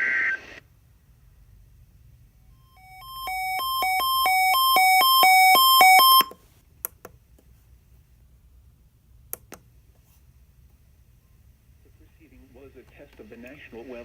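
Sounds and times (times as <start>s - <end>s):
weather radio alarm beeping: 2.6s - 6.3s.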